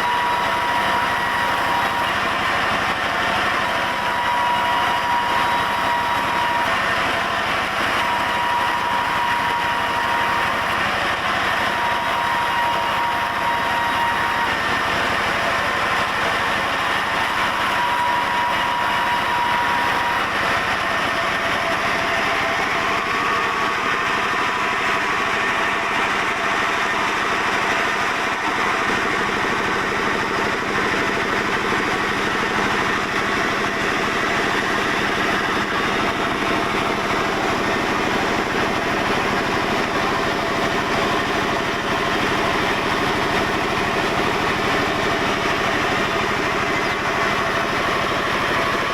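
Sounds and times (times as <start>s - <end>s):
whining tone: 0.0s - 26.1s
sawmill saw cutting log: 0.0s - 48.9s.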